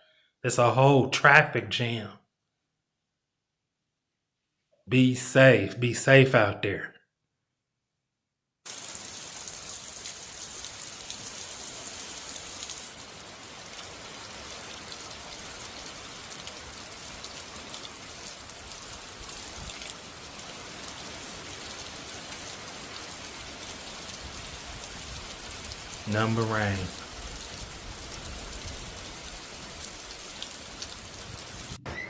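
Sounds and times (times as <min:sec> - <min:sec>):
heavy rain on hard surfaces: 0:08.7 - 0:31.8.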